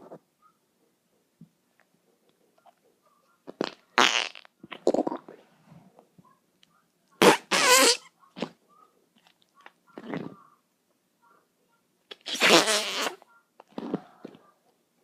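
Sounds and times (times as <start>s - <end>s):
farting: 3.5s - 5.3s, 7.2s - 8.6s, 12.1s - 14.0s.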